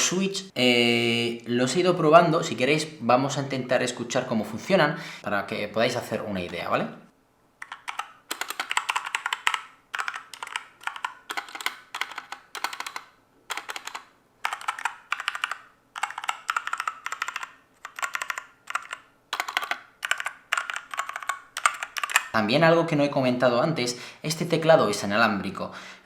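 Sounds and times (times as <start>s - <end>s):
mechanical keyboard typing: 7.6s - 22.4s.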